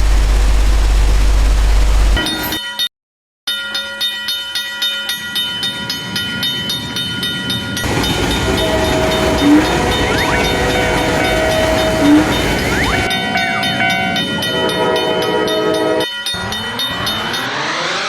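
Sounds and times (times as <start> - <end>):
crossing warning bell clanging: 2.2 - 2.9, 3.5 - 18.0
train passing: 5.0 - 18.0
sustained horn-like tone: 8.3 - 18.0.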